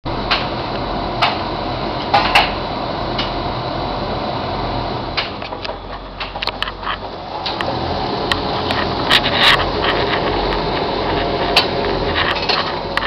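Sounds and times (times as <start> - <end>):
sharp clicks and knocks: 5.2 - 7.7.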